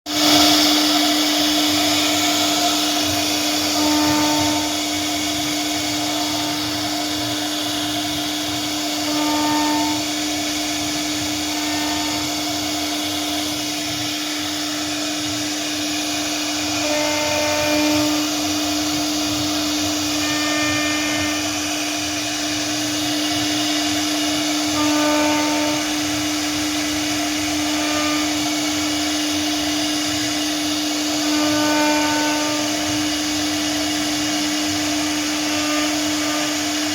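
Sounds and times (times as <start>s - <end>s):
cnc router carving wood: 0.1s - 36.9s
short higher tones: 8.9s - 10.2s.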